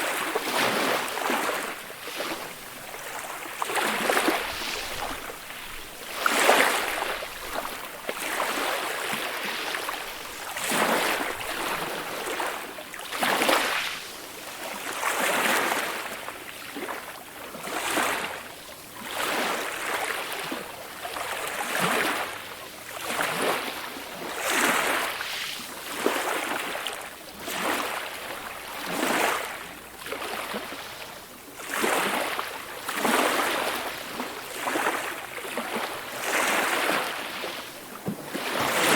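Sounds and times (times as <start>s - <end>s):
calm ocean waves breaking: 0.0s - 38.9s.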